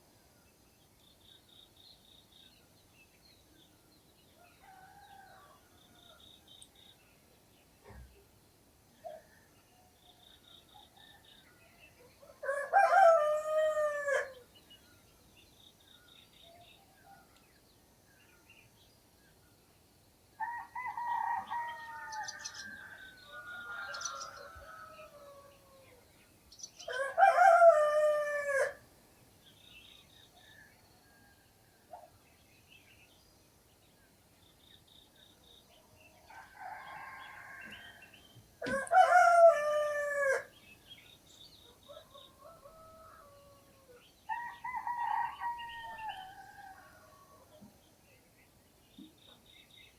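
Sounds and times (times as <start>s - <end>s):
roosters crowing: 12.4s - 14.4s, 20.4s - 25.9s, 26.9s - 28.8s, 36.3s - 40.5s, 42.0s - 47.4s
small birds chirping: 32.0s - 49.9s.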